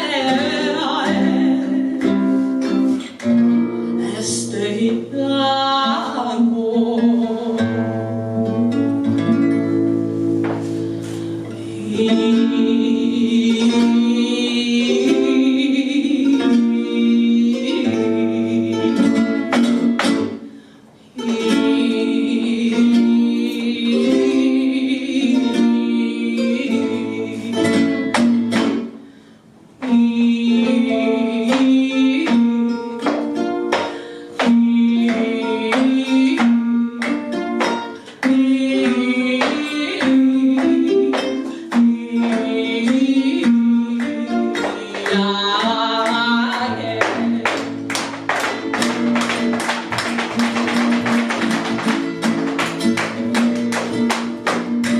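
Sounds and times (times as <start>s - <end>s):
woman singing: 0.0s - 9.5s, 11.5s - 20.0s, 21.2s - 28.8s, 29.8s - 54.9s
acoustic guitars playing: 0.0s - 54.9s
hand clapping and box drum strikes: 19.5s - 20.3s, 43.4s - 54.9s.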